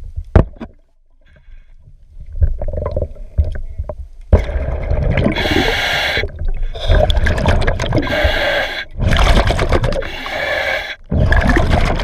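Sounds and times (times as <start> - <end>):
bubbling exhalations: 4.4 - 12.0
regulator hissing inhalations: 5.4 - 7.0, 8.0 - 9.0, 10.0 - 11.1.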